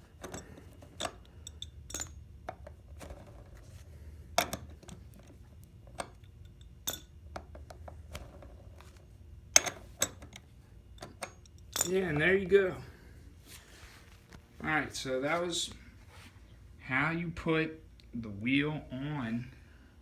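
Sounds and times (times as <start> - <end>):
tool clinking on metal nut: 0.0 - 2.7, 4.4 - 7.6, 9.5 - 12.2.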